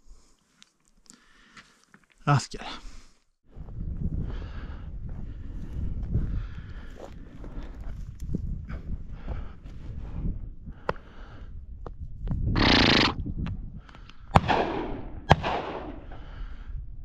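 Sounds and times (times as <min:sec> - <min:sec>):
shotgun shots with echo: 0:14.4 - 0:16.1.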